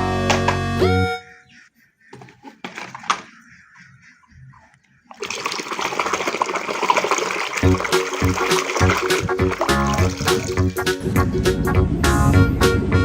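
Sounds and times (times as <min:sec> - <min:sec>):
water running: 0:05.1 - 0:11.0.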